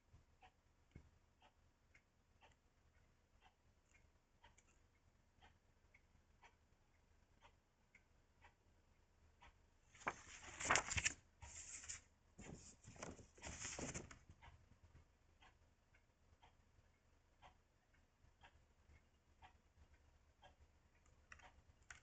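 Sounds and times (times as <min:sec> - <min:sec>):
paper rustling and crinkling: 0:10.0 - 0:14.2.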